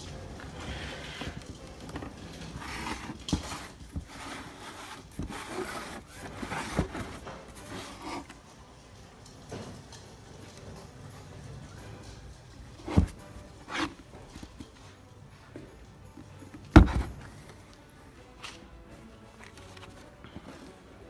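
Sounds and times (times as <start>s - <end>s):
objects rubbing and scraping: 0.1s - 15.1s.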